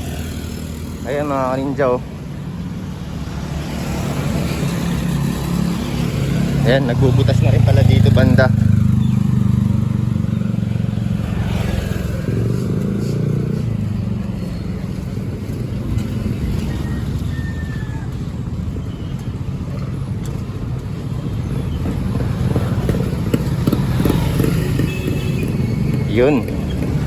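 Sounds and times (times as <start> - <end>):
traffic rumble: 0.0 - 27.0.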